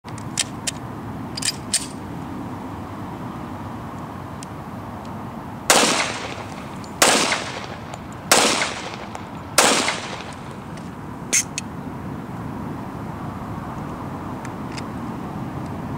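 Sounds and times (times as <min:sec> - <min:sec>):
suppressed pistol shots: 0:05.7 - 0:10.7.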